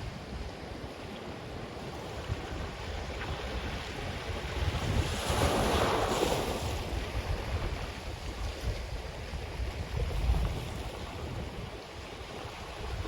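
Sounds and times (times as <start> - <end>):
ocean waves breaking on beach: 0.0 - 13.0
wind buffeting microphone: 0.0 - 13.0.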